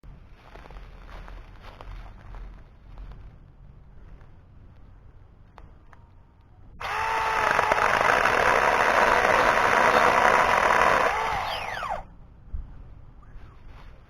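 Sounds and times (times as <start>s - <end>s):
mini chainsaw motor whine: 6.8s - 12.1s.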